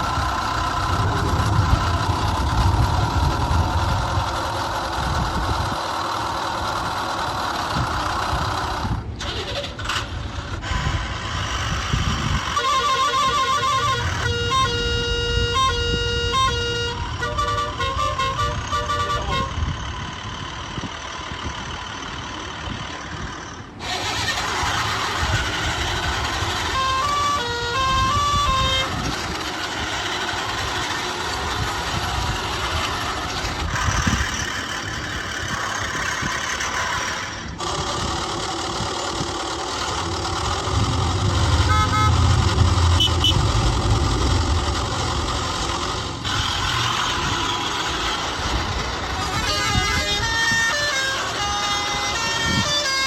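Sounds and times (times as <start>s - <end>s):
truck engines running: 0.0s - 53.0s
truck horn honks: 12.3s - 20.0s, 23.8s - 34.4s, 39.8s - 45.0s, 49.0s - 53.0s
short stepping-note tune: 40.4s - 45.6s.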